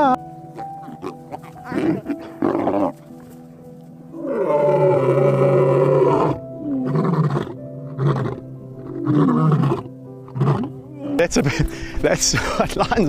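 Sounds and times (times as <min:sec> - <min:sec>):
background music with held notes: 0:00.0 - 0:13.0
lion roaring and grunting: 0:00.6 - 0:03.0, 0:04.2 - 0:11.2.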